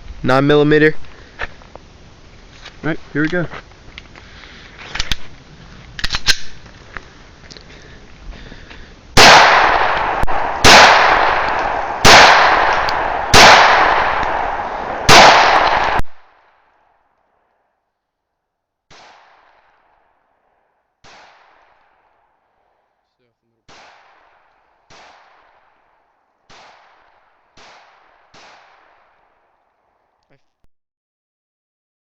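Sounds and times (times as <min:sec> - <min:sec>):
pistol shots: 0:09.2 - 0:16.4, 0:18.9 - 0:19.9, 0:21.0 - 0:22.0, 0:23.7 - 0:25.8, 0:26.5 - 0:29.3
faint sharp bangs: 0:09.2 - 0:16.6, 0:18.9 - 0:22.8, 0:23.7 - 0:25.8, 0:26.4 - 0:29.5.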